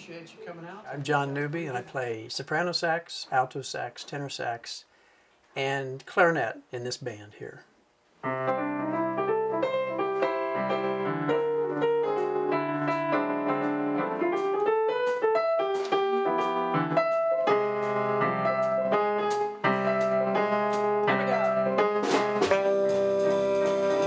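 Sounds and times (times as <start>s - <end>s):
piano music: 8.2s - 24.0s.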